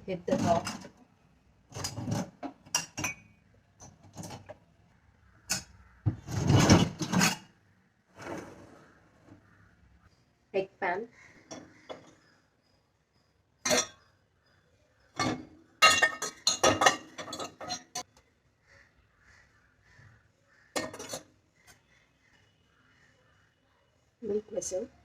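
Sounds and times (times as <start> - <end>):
pans clattering in dishwasher rack: 15.2 - 18.0.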